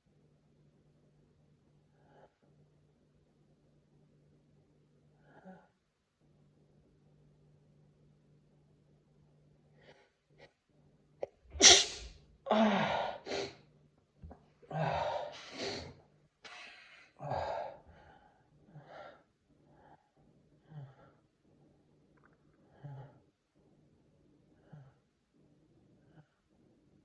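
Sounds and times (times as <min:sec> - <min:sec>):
man sneezing: 0:11.6 - 0:13.5
breaths: 0:14.7 - 0:21.2.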